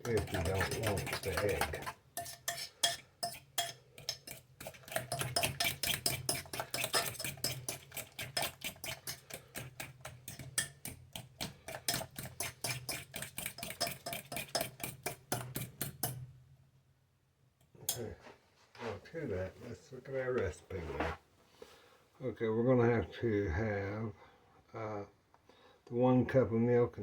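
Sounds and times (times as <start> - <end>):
fork clicking against a bowl: 0.0 - 16.2.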